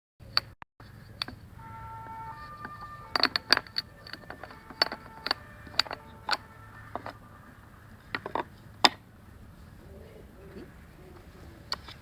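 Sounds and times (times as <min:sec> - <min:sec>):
faint steady tones: 0:01.0 - 0:12.0
hard clicks and knocks: 0:02.6 - 0:07.2.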